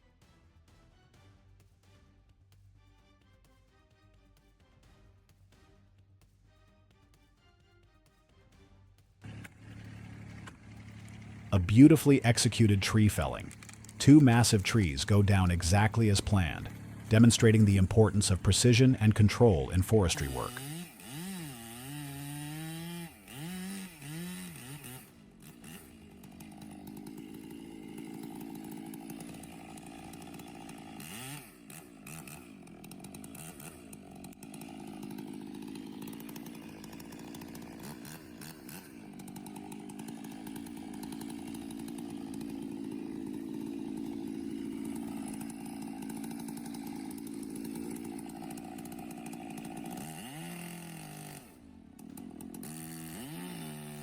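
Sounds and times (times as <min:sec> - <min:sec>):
chainsaw revving and cutting: 0:09.2 - 0:54.0.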